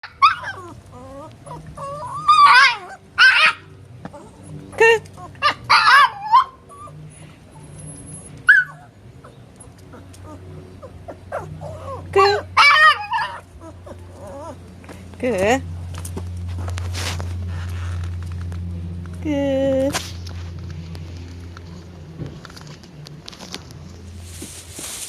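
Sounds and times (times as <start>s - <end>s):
dog whining and yipping: 0.0s - 14.8s.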